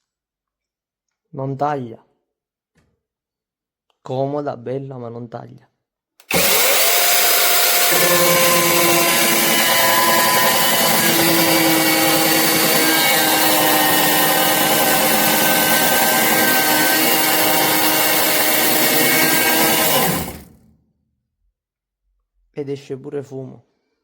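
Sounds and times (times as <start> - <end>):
chainsaw motor whine: 6.3 - 20.6.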